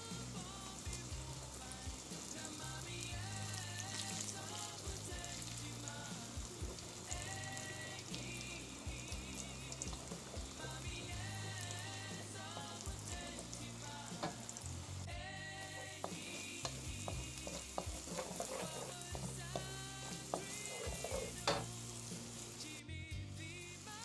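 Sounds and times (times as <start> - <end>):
background music: 0.0 - 24.0
eggs and onion sizzling in oil: 0.0 - 24.0
utensil scraping pan: 3.5 - 14.6, 15.7 - 22.8.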